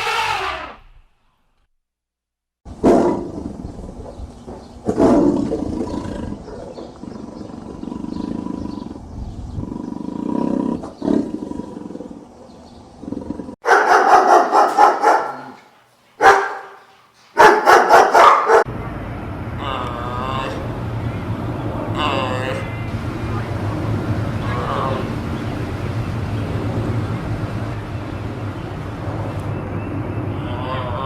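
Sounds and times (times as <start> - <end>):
big cat roaring and growling: 2.7 - 13.6
dog barking: 13.6 - 18.7.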